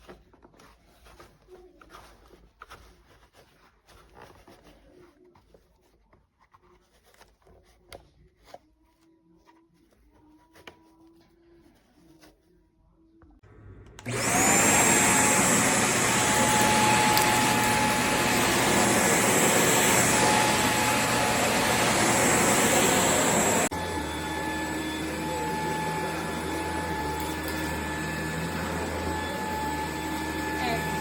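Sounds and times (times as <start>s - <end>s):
stick vacuum motor whine: 13.5s - 31.0s.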